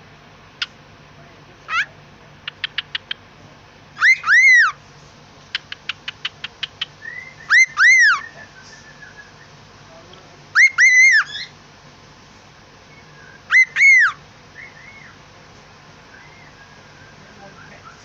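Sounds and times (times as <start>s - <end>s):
pet bird whistling: 2.5s - 3.2s, 4.0s - 4.8s, 5.5s - 9.6s, 10.6s - 11.5s, 12.9s - 15.2s, 16.1s - 18.0s.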